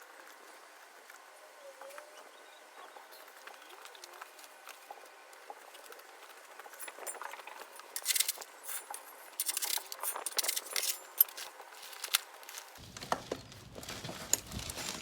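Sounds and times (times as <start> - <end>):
crushed stone crunching: 9.6 - 15.0.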